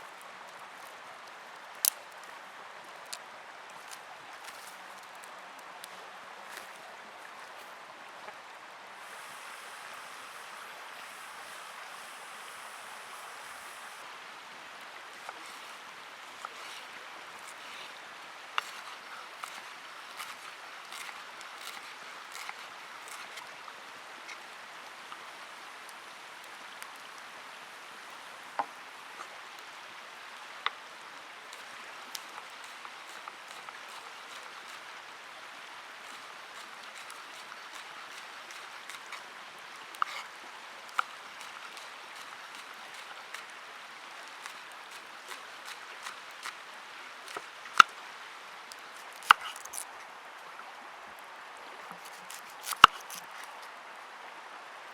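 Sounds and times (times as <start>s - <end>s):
fire crackles and pops: 0.0s - 6.8s, 48.7s - 49.9s
campfire cooking hiss: 0.0s - 54.9s.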